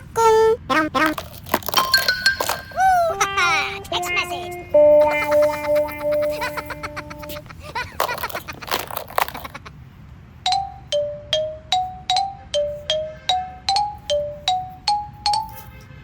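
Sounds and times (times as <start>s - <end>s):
simple jingle melody: 2.0s - 7.3s, 10.5s - 15.6s.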